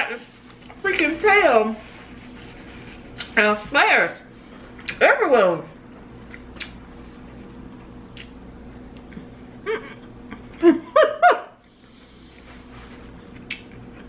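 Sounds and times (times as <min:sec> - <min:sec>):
woman laughing: 0:09.6 - 0:11.6.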